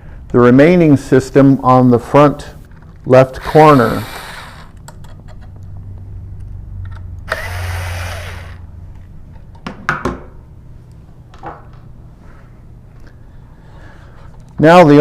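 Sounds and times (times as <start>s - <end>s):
power screwdriver whirring: 3.4s - 4.8s, 7.3s - 8.6s.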